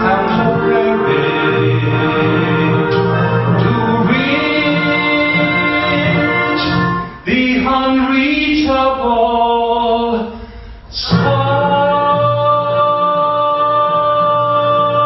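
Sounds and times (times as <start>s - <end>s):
choir singing long held notes: 0.0s - 8.8s.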